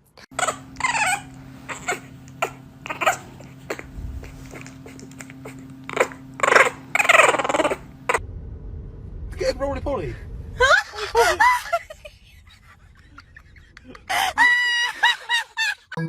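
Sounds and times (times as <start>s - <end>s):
steady low hum: 0.0s - 16.0s
pet animal short pitched calls: 0.4s - 8.2s.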